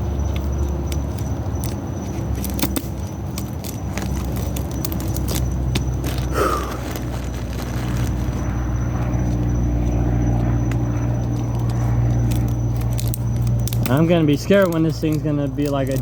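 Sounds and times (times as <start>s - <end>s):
steady low hum: 0.0s - 16.0s
rubber bands snapping: 0.3s - 8.5s.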